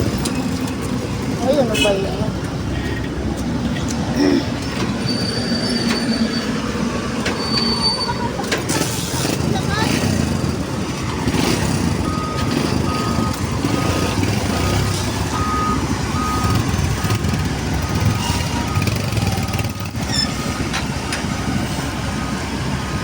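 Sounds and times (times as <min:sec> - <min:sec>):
diesel engine rumble: 0:00.0 - 0:23.0
backup alarm beeping: 0:12.0 - 0:20.2.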